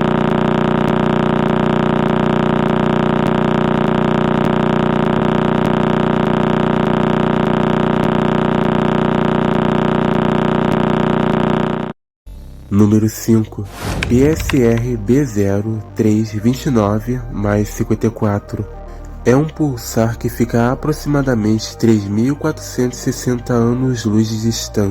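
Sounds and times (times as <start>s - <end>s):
pulsing engine-like buzz: 0.0s - 12.8s.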